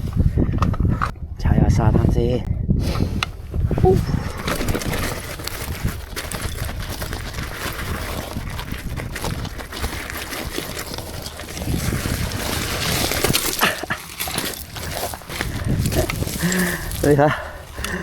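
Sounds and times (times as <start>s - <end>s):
wind on microphone: 0.0s - 18.0s
bike tyres crunching on sand: 4.1s - 18.0s.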